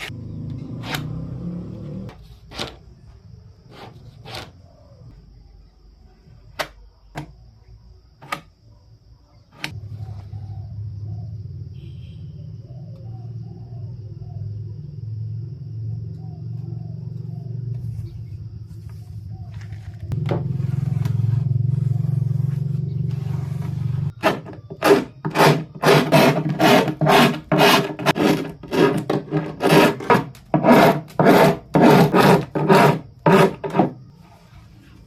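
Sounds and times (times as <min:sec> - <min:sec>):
hand tool rasping laminate edge: 0:24.2 - 0:34.0.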